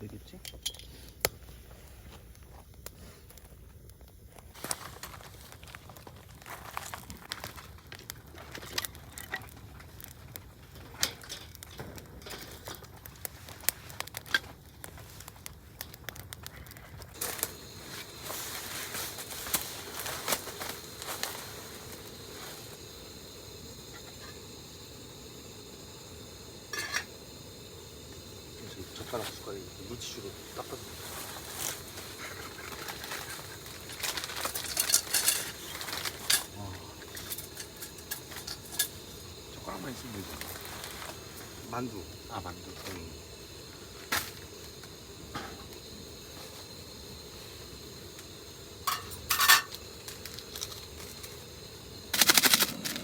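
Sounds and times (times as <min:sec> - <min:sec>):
steady hiss: 0:00.0 - 0:53.0
scattered crackles: 0:00.9 - 0:22.9, 0:28.5 - 0:53.0
crinkling and rustling: 0:03.3 - 0:22.7, 0:31.1 - 0:38.9.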